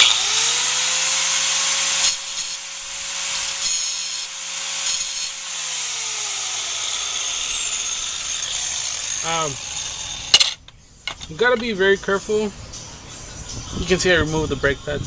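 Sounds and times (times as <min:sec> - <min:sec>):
angle grinder grinding metal: 0:00.0 - 0:11.4.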